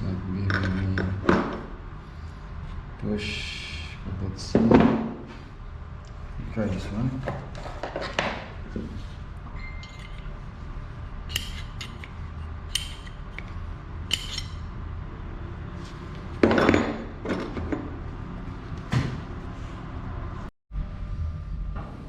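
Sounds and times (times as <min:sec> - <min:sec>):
metal parts clattering: 0:09.8 - 0:10.3, 0:14.1 - 0:14.6
small metal clicks and taps: 0:12.7 - 0:13.5.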